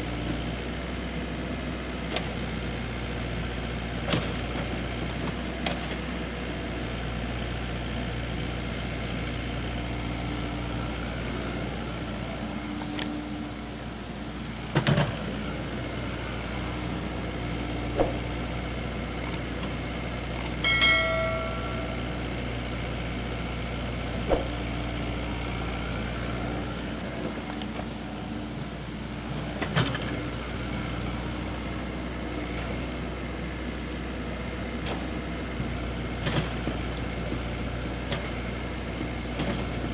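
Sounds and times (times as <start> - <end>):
excavator engine running: 0.0 - 39.9
short pitched tone: 20.6 - 22.5
sharp knocks and clanks: 20.7 - 22.2.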